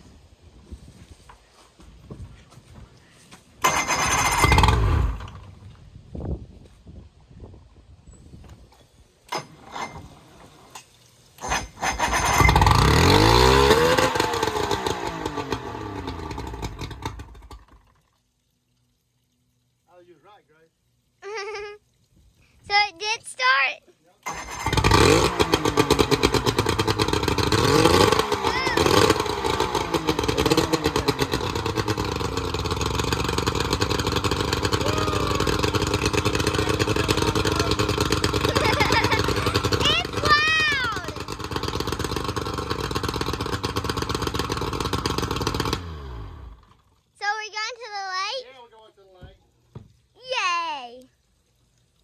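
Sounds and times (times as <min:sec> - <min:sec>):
boat engine revving: 0:03.6 - 0:05.6, 0:11.4 - 0:17.8, 0:24.2 - 0:46.8
outboard motor running: 0:03.6 - 0:05.6, 0:11.4 - 0:18.1, 0:24.2 - 0:47.0.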